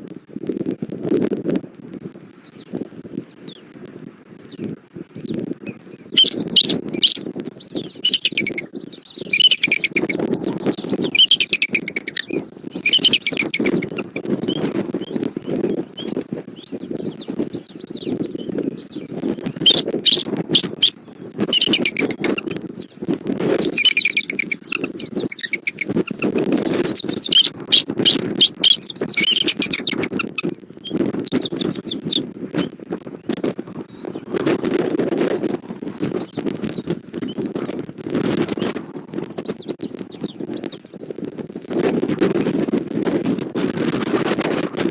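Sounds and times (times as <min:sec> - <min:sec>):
wind rumble on microphone: 0:00.0 - 0:44.9
eagles chirping: 0:06.1 - 0:14.2, 0:19.5 - 0:32.2.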